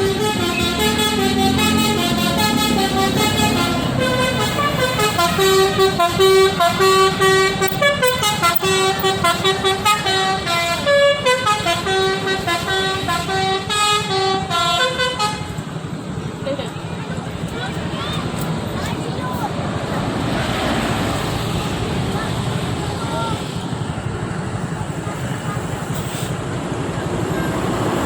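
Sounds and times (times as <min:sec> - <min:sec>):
multi-tone musical vehicle horn: 0:00.0 - 0:15.7
engine running: 0:00.0 - 0:28.0.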